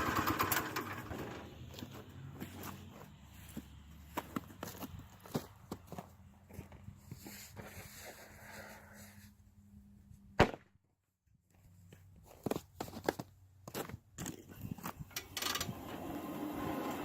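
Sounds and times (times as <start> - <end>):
footsteps: 1.1 - 8.3.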